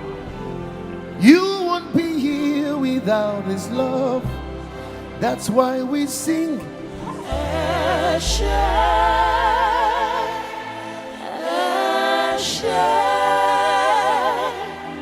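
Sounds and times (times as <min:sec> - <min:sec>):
sustained low bass notes: 0:00.0 - 0:11.1
gospel voices singing: 0:00.0 - 0:15.0.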